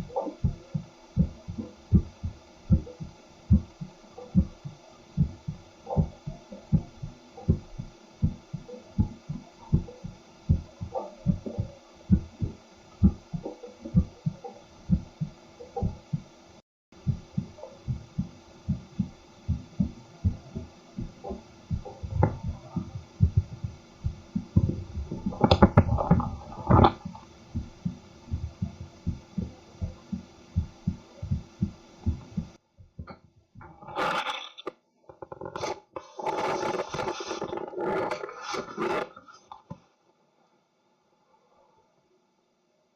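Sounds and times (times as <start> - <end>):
rubbing and scraping noise: 0.0 - 16.4, 17.0 - 32.6, 33.6 - 39.7
faint hum: 0.0 - 32.7
heartbeat through stethoscope: 0.0 - 33.8.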